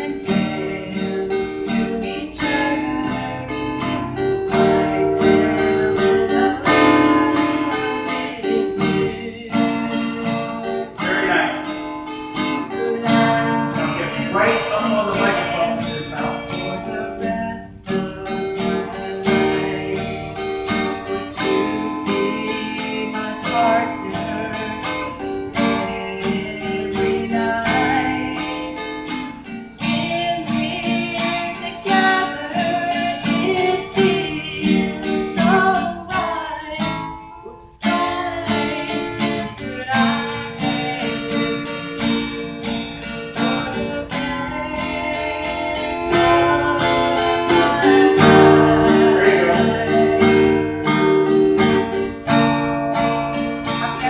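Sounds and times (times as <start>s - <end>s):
acoustic guitar strumming: 0.0s - 54.0s.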